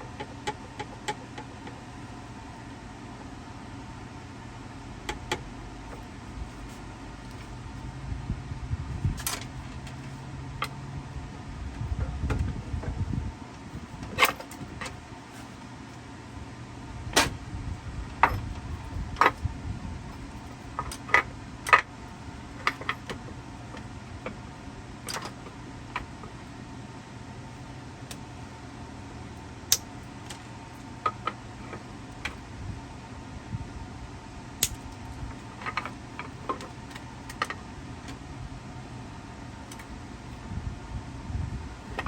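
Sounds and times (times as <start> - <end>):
steady low hum: 0.0 - 42.0
low rumble: 5.5 - 14.0.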